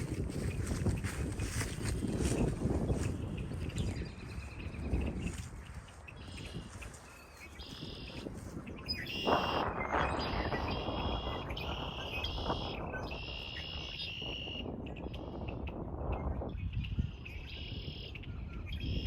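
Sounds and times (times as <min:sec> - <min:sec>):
bird calling: 0:05.9 - 0:15.6
wind rushing: 0:08.2 - 0:17.2.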